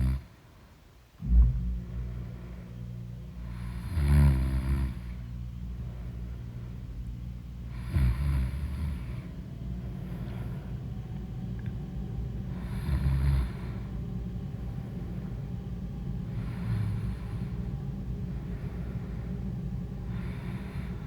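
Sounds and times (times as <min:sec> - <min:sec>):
steady low hum: 0:00.0 - 0:21.0
person snoring loudly: 0:03.6 - 0:05.1, 0:07.7 - 0:09.2, 0:12.6 - 0:13.7.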